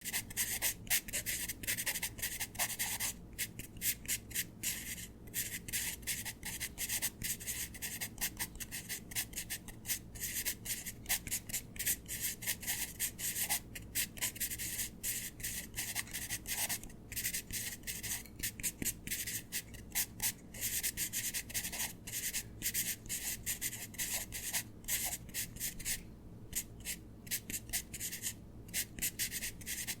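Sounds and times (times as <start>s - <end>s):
stylus scratching on tablet: 0.0s - 30.0s.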